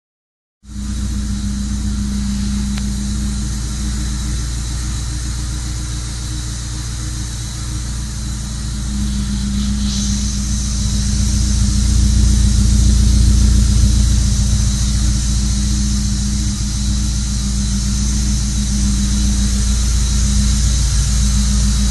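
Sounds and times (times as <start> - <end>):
car engine humming: 0.7 - 21.9
high hiss: 0.7 - 21.9.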